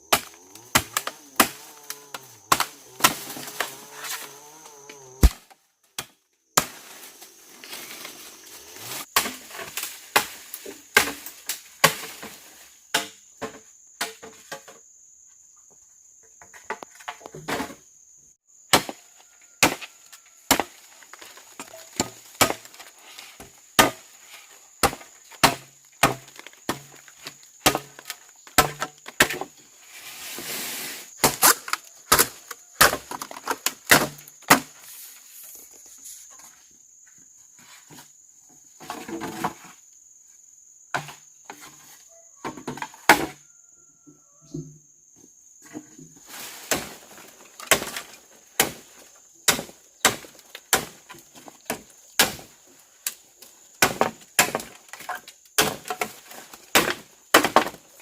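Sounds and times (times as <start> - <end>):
blade chopping wood: 5.2 - 5.4, 20.5 - 22.8, 23.8 - 24.0, 24.8 - 29.5, 31.2 - 34.8, 47.6 - 48.8, 49.5 - 52.5, 53.8 - 57.8.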